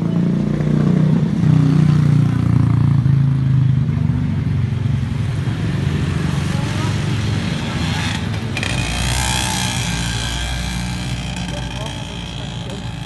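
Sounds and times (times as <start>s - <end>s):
engine running: 6.0s - 13.0s.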